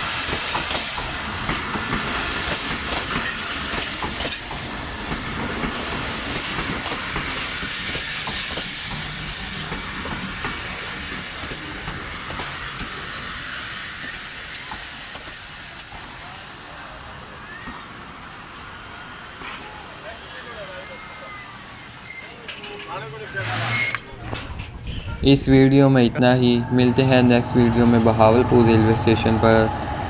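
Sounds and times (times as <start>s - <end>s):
train wheels clacking over rail joints: 0.0s - 16.1s
train rushing noise: 0.0s - 30.0s.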